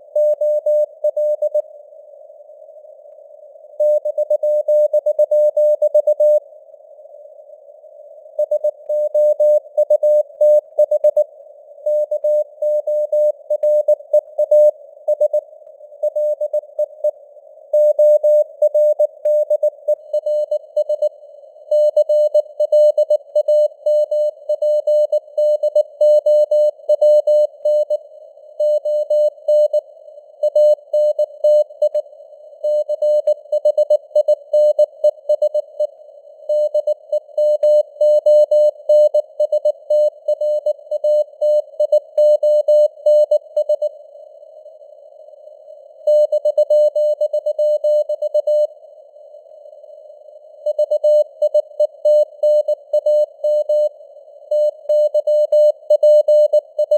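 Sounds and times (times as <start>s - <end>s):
faint radio hiss: 0.0s - 4.0s, 5.8s - 8.8s, 9.6s - 12.6s, 13.2s - 22.6s.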